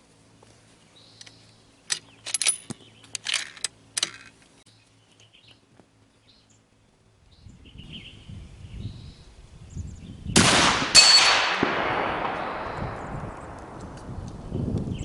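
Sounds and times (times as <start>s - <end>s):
gunshot echo: 10.4s - 14.1s
suppressed rifle shot: 10.4s - 14.1s
rifle crack: 10.4s - 14.4s.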